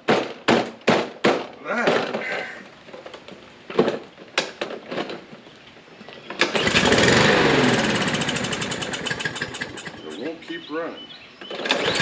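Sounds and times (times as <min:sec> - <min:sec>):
lawn mower engine running: 0:06.3 - 0:10.5, 0:11.5 - 0:12.0.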